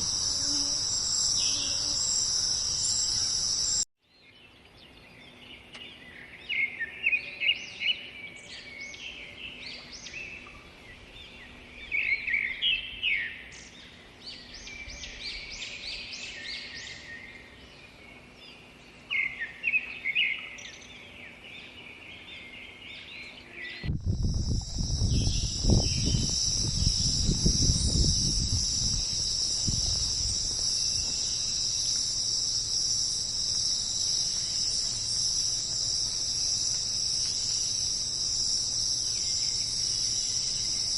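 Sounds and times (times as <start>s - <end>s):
birds chirping: 0.0s - 40.9s
insect chorus: 0.0s - 40.9s.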